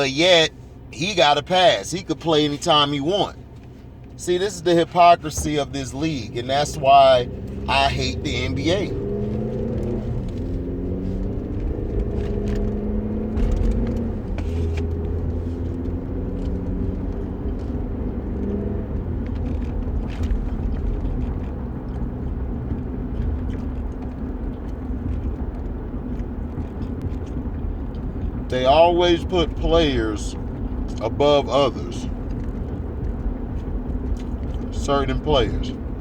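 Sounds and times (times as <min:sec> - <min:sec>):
road noise: 0:00.0 - 0:36.0
vehicle engine rumble: 0:00.0 - 0:36.0.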